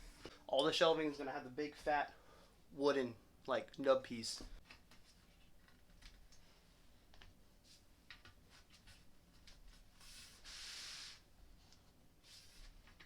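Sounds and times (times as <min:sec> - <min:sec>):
rubbing scrape: 0:10.0 - 0:11.2.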